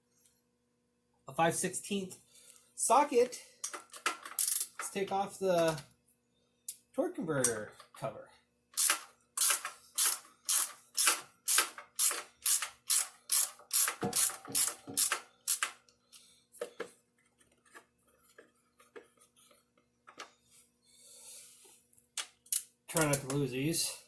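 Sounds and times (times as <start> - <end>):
hand ratchet pawl clicking: 3.6 - 4.9, 8.8 - 15.8.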